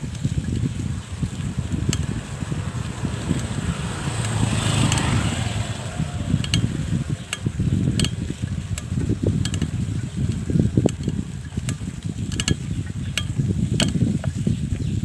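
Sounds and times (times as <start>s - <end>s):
bicycle rumbling: 0.0s - 15.0s
sharp clicks: 1.4s - 2.2s, 4.2s - 14.1s.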